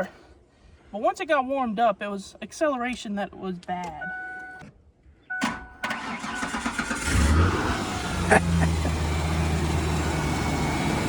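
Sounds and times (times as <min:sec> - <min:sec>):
engine cranking on starter: 0:05.8 - 0:11.0
car engine idling: 0:05.9 - 0:11.0.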